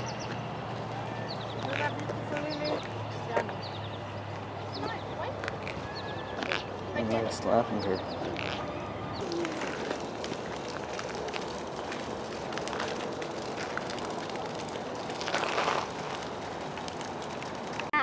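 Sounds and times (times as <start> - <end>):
outdoor background noise: 0.0 - 18.0.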